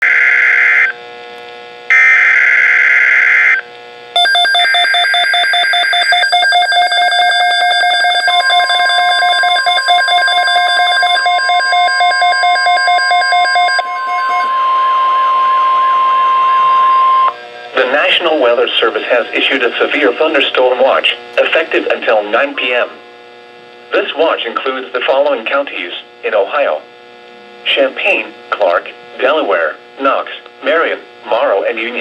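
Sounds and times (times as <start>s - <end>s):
pulsing electronic alarm: 0.0s - 0.9s, 1.9s - 3.6s, 4.2s - 20.5s
screechy data tones: 4.2s - 20.7s
steady alert tone: 6.7s - 19.8s.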